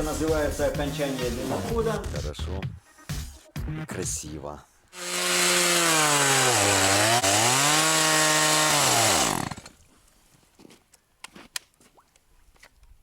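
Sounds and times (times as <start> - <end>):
chainsaw cutting: 5.0 - 9.8.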